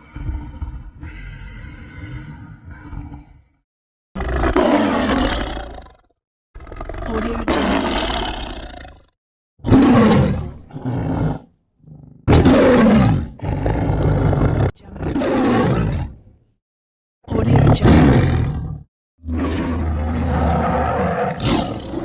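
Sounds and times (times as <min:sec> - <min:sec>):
dinosaur roars: 0:00.0 - 0:03.6, 0:04.2 - 0:16.2, 0:17.6 - 0:22.0.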